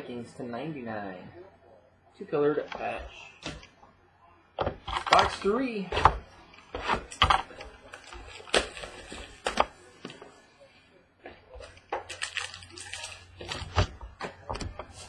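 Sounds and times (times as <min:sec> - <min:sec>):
wrapper crinkling: 0:06.8 - 0:09.7, 0:11.6 - 0:14.0.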